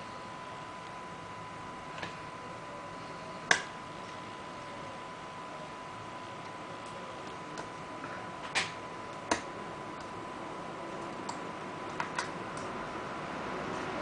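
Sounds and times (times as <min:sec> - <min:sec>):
small tools clicking and tapping: 0:08.5 - 0:10.2.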